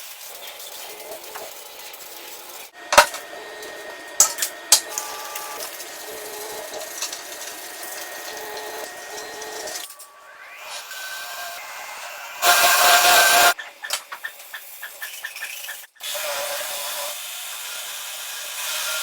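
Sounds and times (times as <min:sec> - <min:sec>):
steady workshop noise: 0:00.0 - 0:19.0.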